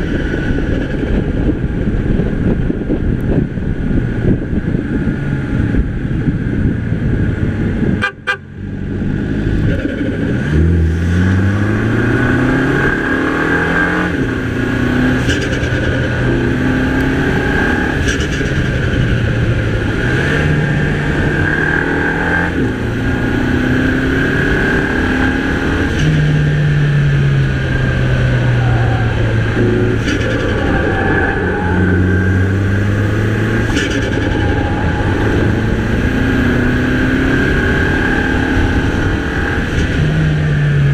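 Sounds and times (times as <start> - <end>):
car engine revving through gears: 8.8 - 40.9.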